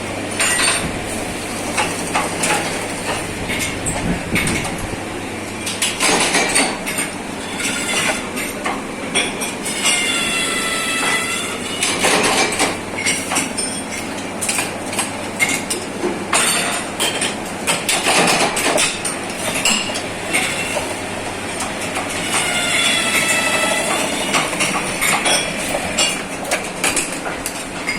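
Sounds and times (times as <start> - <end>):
high squealing whine: 7.4 - 13.1, 21.9 - 26.1.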